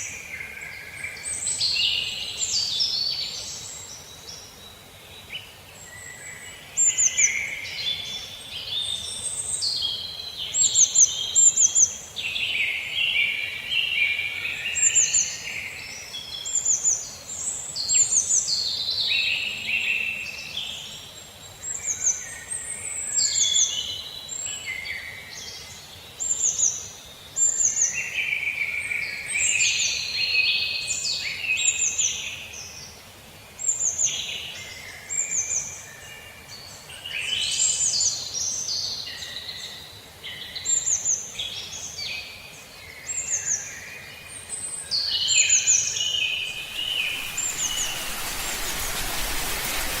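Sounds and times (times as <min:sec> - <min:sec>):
birds singing: 0:37.1 - 0:50.0.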